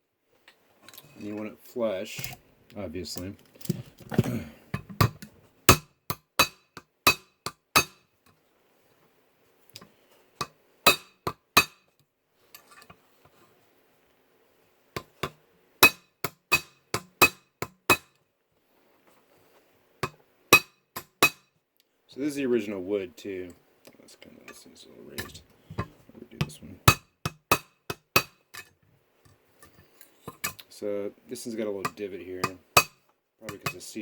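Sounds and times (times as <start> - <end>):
hammer tapping brass rivet: 4.8 - 8.0, 15.0 - 18.1.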